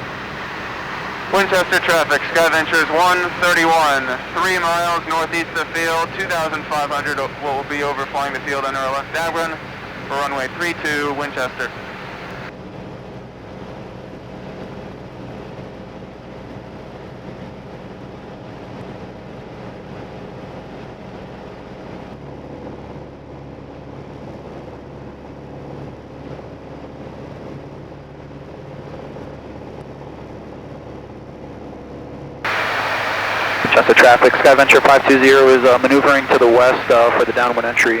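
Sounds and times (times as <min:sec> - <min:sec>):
light airplane engine droning: 0:00.0 - 0:12.5, 0:32.5 - 0:38.0.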